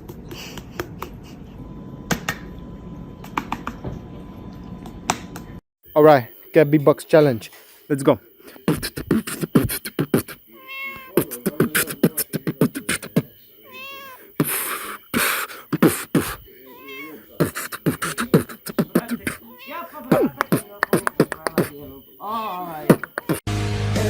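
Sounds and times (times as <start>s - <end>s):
beatboxing: 8.5s - 10.4s, 11.1s - 13.3s, 14.4s - 16.5s, 17.4s - 19.4s, 20.0s - 21.8s, 22.8s - 23.5s
meow-like vocal calls: 10.0s - 14.4s, 16.2s - 23.4s.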